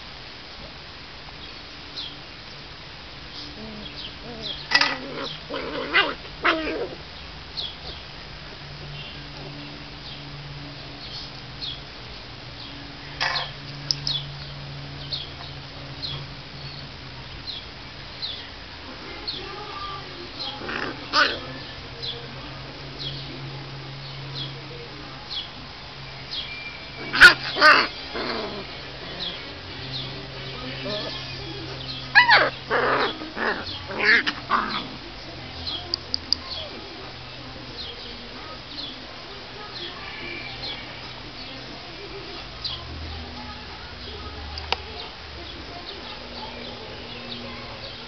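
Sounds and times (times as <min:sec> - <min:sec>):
puppies yelping: 0:03.5 - 0:07.1, 0:20.3 - 0:21.8, 0:26.4 - 0:36.8
puppies squeaking and yipping: 0:26.7 - 0:29.5, 0:30.6 - 0:34.9.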